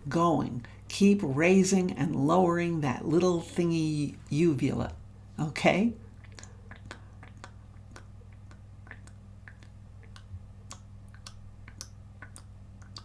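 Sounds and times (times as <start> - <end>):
low electrical hum: 0.0 - 13.0
wet mouth clicks: 6.0 - 13.0.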